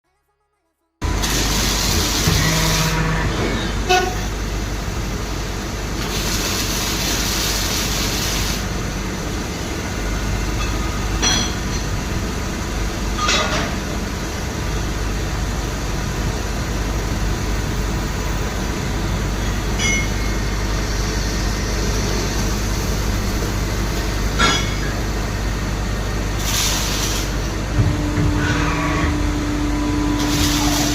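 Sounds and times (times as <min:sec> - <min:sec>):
lathe machine hum: 0:27.3 - 0:30.9.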